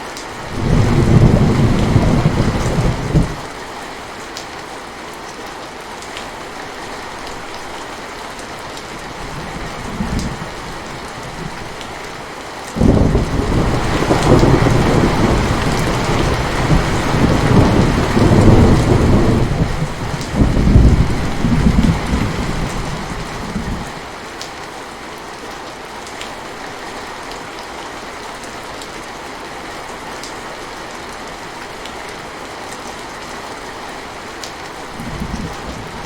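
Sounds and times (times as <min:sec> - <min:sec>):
steady rain falling: 0:00.0 - 0:36.0
thunder rumbling: 0:00.4 - 0:03.5, 0:09.1 - 0:12.1, 0:12.8 - 0:24.0, 0:34.8 - 0:36.0.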